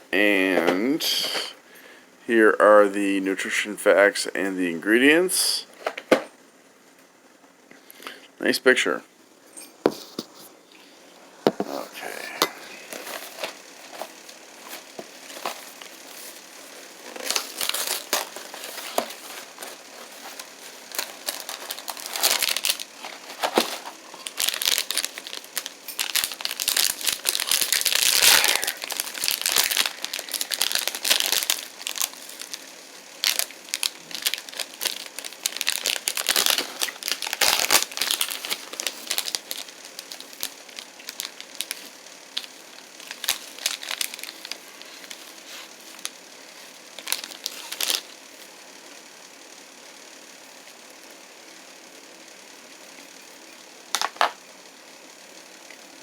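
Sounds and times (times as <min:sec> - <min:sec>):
crinkly packaging crackling: 0:00.4 - 0:01.5, 0:11.6 - 0:48.6, 0:53.9 - 0:54.4.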